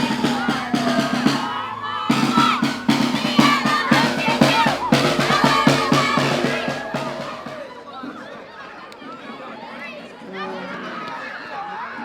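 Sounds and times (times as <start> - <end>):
steady drum beat: 0.0 - 7.7.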